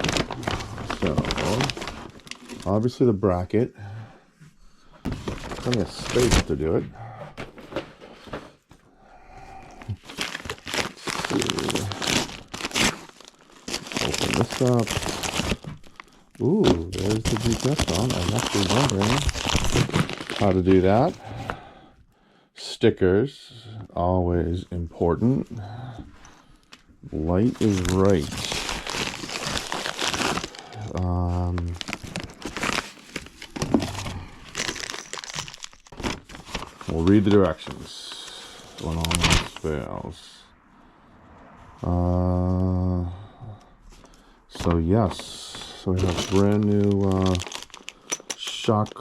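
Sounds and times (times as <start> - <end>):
packing material crinkling: 0.0 - 3.0, 5.1 - 6.7, 9.6 - 21.6, 27.2 - 40.0, 44.5 - 49.0.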